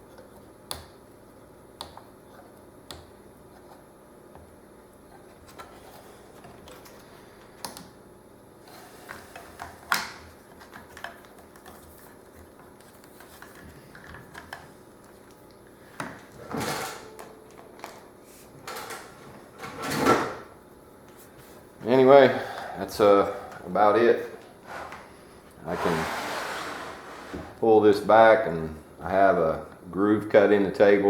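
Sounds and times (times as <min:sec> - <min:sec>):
light clicks and knocks of parts: 0:09.1 - 0:16.3
short sliding scrapes: 0:24.6 - 0:27.6.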